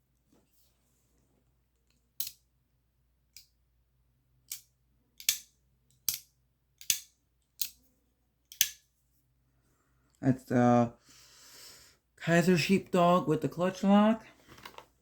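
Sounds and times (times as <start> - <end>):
pocketknife snapping open and shut: 4.5 - 7.8, 8.5 - 8.8.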